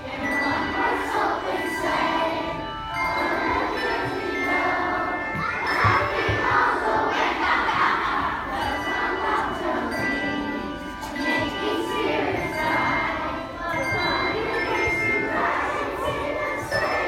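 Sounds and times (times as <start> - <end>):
handbells ringing: 0.0 - 17.0.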